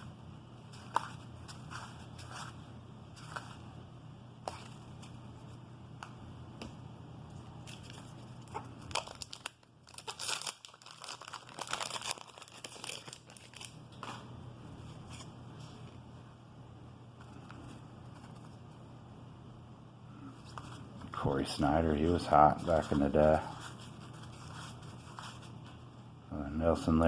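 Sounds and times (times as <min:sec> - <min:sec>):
paper wrapper tearing and crinkling: 0:08.8 - 0:13.8.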